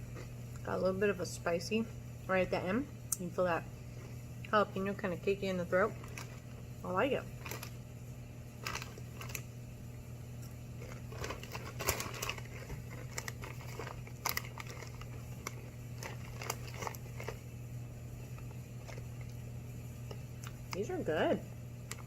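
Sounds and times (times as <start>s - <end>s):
steady low hum: 0.0s - 22.0s
chip bag rustling: 5.7s - 7.8s, 8.6s - 9.5s, 10.7s - 17.5s
chips being chewed: 8.6s - 9.5s, 10.4s - 17.5s.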